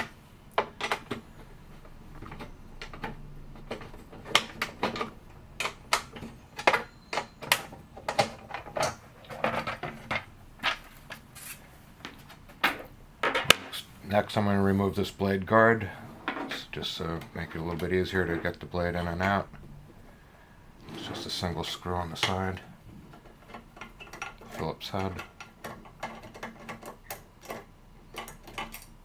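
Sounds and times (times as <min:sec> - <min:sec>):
metal tools clicking and knocking: 0:00.0 - 0:13.9, 0:21.0 - 0:29.0.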